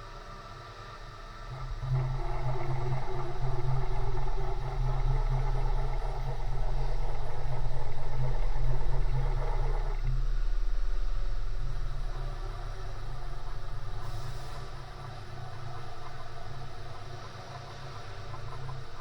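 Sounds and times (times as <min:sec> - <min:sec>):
milling machine motor hum: 0:00.1 - 0:19.0.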